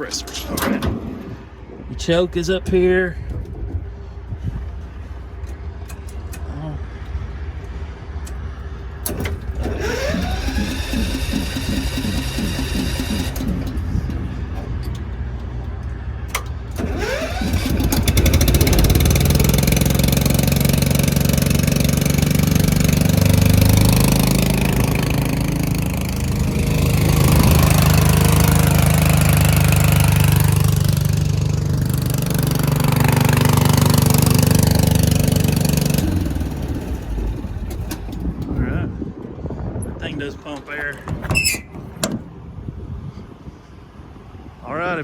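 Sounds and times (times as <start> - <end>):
air compressor petrol engine running: 9.0 - 38.5.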